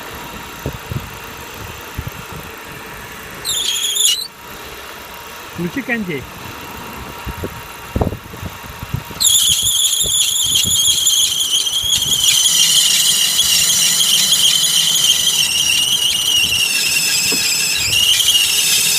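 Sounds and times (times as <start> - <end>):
car engine idling: 0.0 - 18.9
high-pitched engine belt squeal: 3.4 - 4.4, 9.2 - 18.9.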